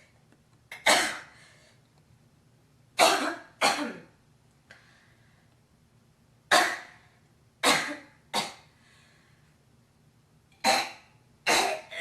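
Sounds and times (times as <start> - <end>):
girl coughing: 0.7 - 1.4, 3.0 - 4.2, 6.5 - 7.0, 7.6 - 8.7, 10.6 - 12.0.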